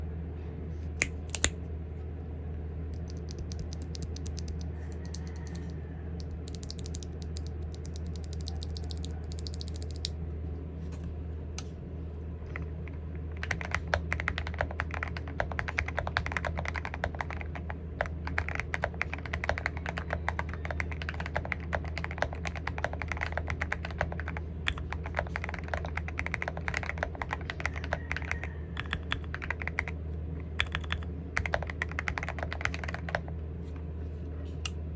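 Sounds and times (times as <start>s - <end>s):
steady low hum: 0.0s - 34.9s
mechanical keyboard typing: 3.0s - 10.1s, 13.3s - 30.0s, 30.6s - 33.3s.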